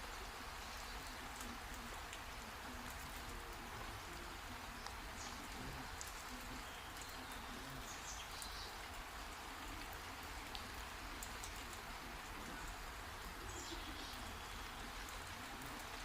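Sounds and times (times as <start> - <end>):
heavy rain hissing: 0.0 - 16.0.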